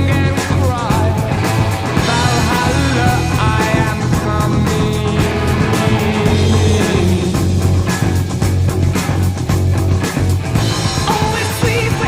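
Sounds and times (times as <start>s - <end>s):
loud rock music with guitar: 0.0s - 12.0s.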